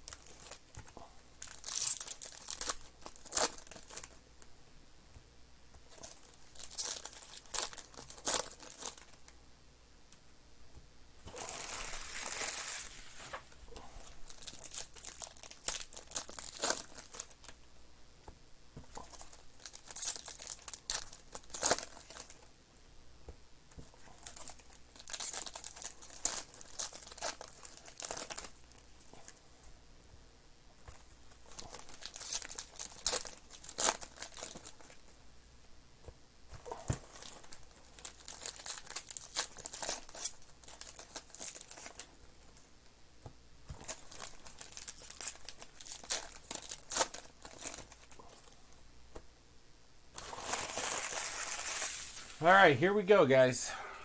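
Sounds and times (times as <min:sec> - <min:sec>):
plastic and foil wrapping crinkling: 0:00.0 - 0:04.2, 0:05.9 - 0:09.3, 0:11.2 - 0:17.6, 0:18.9 - 0:22.5, 0:23.8 - 0:29.4, 0:30.9 - 0:35.2, 0:36.6 - 0:42.7, 0:43.7 - 0:48.6, 0:50.1 - 0:53.5.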